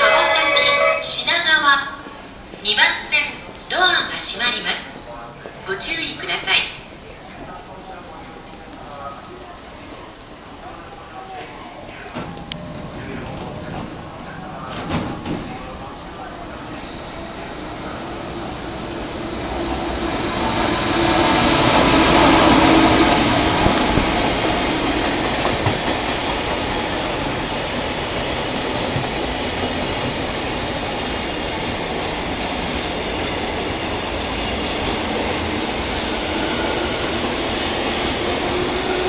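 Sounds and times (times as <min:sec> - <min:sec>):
train wheels clicking over rail joints: 0:19.4 - 0:39.0.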